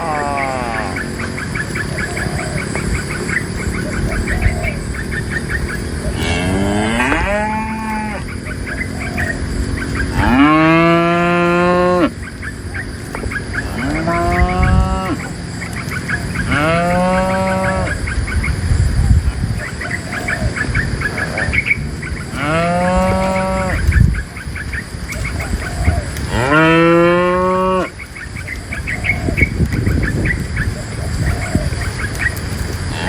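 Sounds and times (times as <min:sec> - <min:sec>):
cattle mooing: 0:00.0 - 0:01.3, 0:06.1 - 0:08.4, 0:09.9 - 0:12.2, 0:13.5 - 0:15.3, 0:16.4 - 0:18.0, 0:22.3 - 0:23.9, 0:26.2 - 0:27.9.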